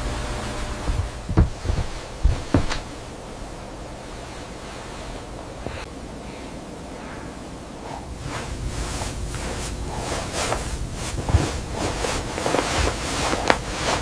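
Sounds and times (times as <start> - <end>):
steady hiss: 0.0 - 14.0
soft brushing rustles: 0.9 - 7.1, 7.8 - 14.0.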